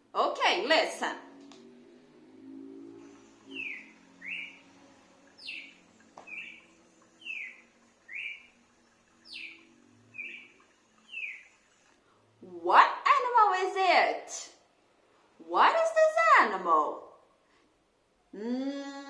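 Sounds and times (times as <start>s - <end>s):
bird chirping: 0.7s - 13.1s.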